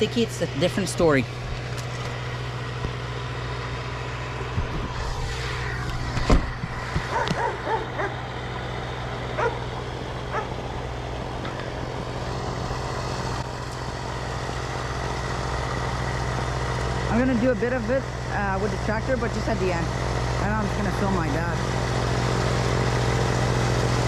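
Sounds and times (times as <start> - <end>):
engine idling: 0.0 - 24.0
dog barking and yipping: 7.0 - 8.2, 9.4 - 10.6.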